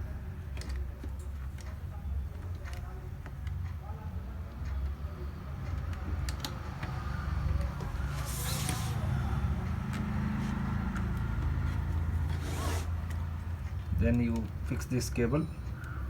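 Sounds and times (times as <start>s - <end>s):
short rustle: 8.1s - 9.0s.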